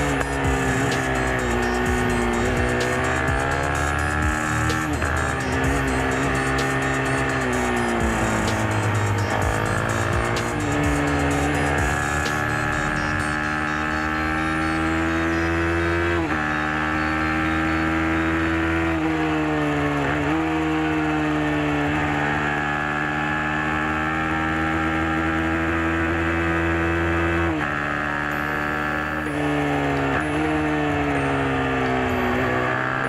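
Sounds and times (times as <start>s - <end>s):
racing motorcycle engine revving: 0.0s - 33.0s.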